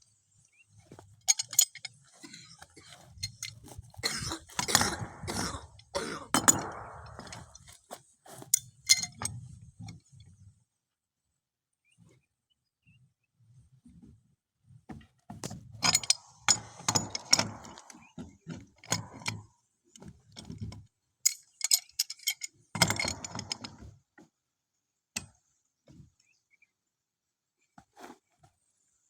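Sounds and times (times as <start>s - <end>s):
hard objects clinking and scraping: 0.8s - 9.3s.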